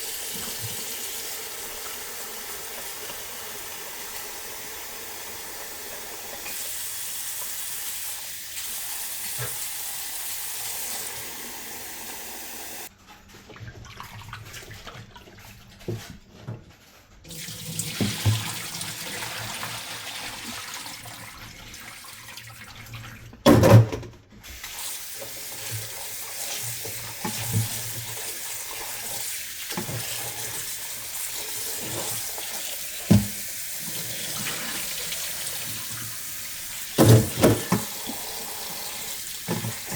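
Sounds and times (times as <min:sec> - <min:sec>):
tap water running into sink: 0:00.0 - 0:12.9, 0:17.3 - 0:23.2, 0:24.6 - 0:39.9.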